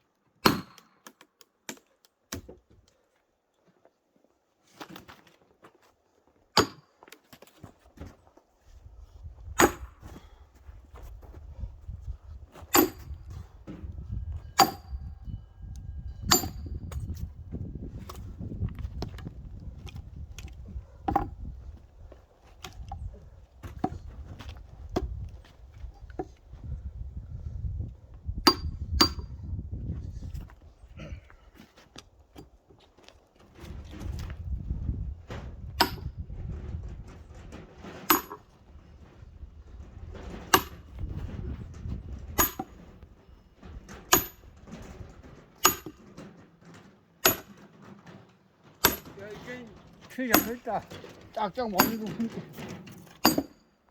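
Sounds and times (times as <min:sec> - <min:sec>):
axe splitting firewood: 0:00.4 - 0:02.8, 0:04.8 - 0:05.5, 0:06.5 - 0:08.3, 0:09.4 - 0:10.7, 0:12.5 - 0:15.1, 0:16.2 - 0:17.2, 0:19.0 - 0:21.7, 0:22.4 - 0:26.4, 0:28.3 - 0:29.4, 0:35.4 - 0:36.2, 0:37.8 - 0:39.2, 0:40.3 - 0:41.2, 0:42.4 - 0:53.9
firewood being split: 0:45.5 - 0:53.6.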